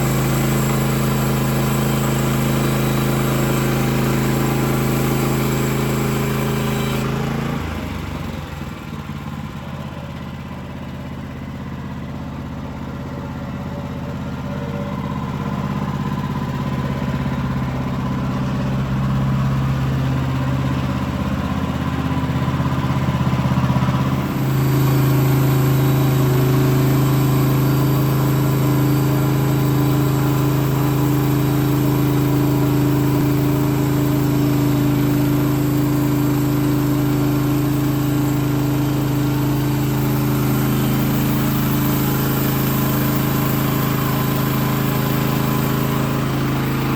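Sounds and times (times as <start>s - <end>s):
sawmill engine running: 0.0s - 46.9s.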